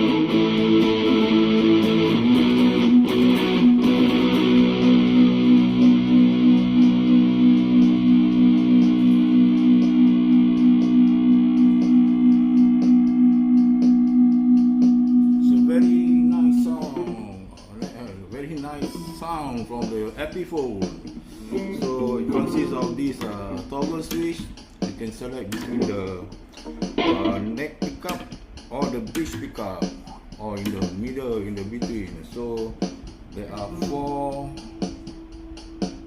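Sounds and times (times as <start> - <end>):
distorted electric guitar chord: 0.0 - 17.2, 27.0 - 27.6.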